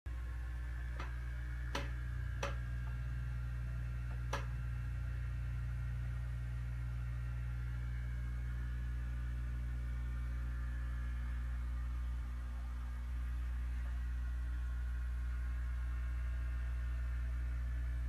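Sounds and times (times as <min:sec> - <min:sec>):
aquarium pump hum: 0:00.1 - 0:18.0
sharp clicks: 0:01.0 - 0:03.1, 0:04.1 - 0:04.6.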